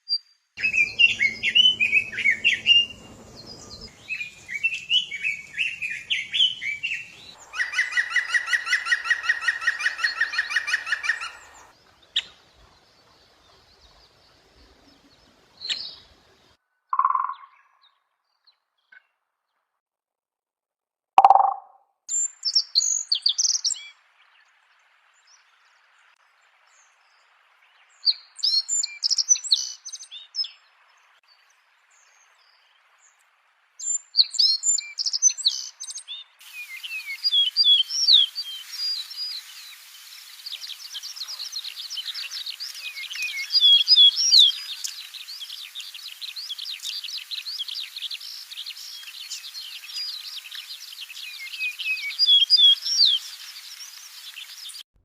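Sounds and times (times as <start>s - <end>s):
songbird chirping: 0.0s - 19.2s, 21.2s - 33.2s, 33.8s - 54.9s
dense bird twittering: 0.6s - 12.4s, 17.0s - 18.0s, 21.2s - 21.7s, 34.8s - 54.8s
steady hiss: 36.4s - 54.8s.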